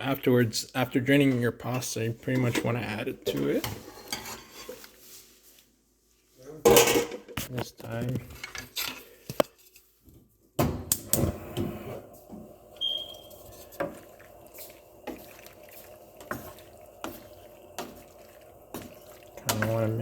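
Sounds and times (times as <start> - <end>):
pasta slopping and squelching: 12.0 - 20.0.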